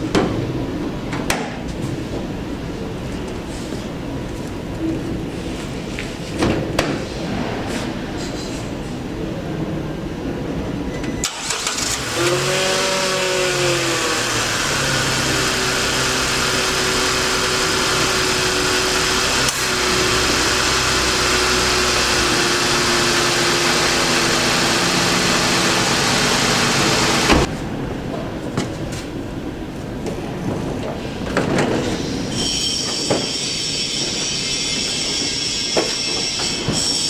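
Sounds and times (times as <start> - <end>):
motor running with hiss: 11.4 - 27.5.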